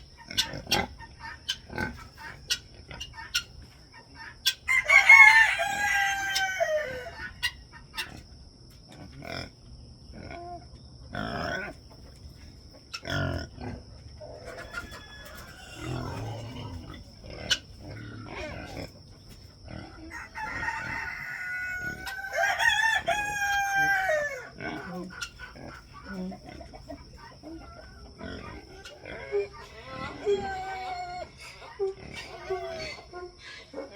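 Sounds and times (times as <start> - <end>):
hens clucking: 0.0 - 33.9
rooster crowing: 4.7 - 7.2, 14.4 - 16.2, 20.0 - 24.6.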